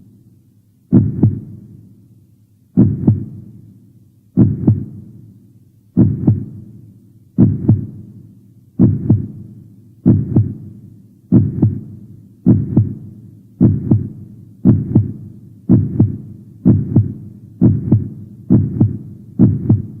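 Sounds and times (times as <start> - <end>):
heartbeat thumps: 0.9 - 1.6, 2.8 - 3.4, 4.4 - 5.0, 6.0 - 6.6, 7.4 - 8.0, 8.8 - 9.4, 10.0 - 10.7, 11.3 - 20.0.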